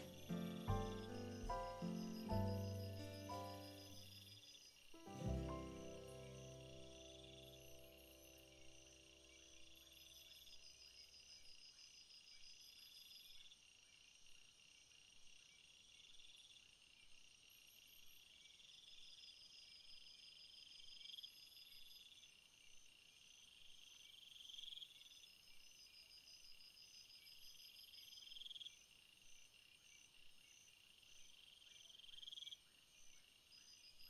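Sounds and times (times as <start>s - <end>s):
soft music: 0.0s - 4.3s, 5.0s - 10.2s
insect-like chirping trill: 0.0s - 13.6s, 15.5s - 34.0s.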